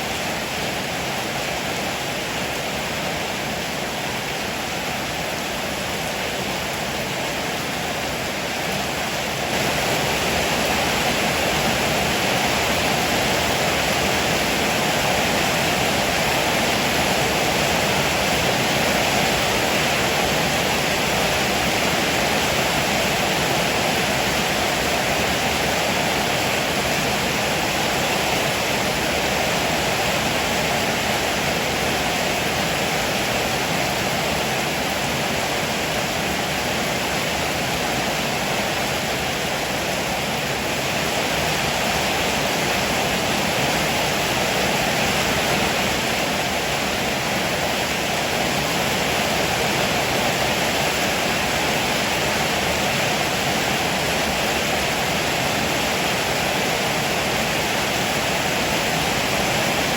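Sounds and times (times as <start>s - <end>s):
heavy rain pouring: 0.0s - 59.9s.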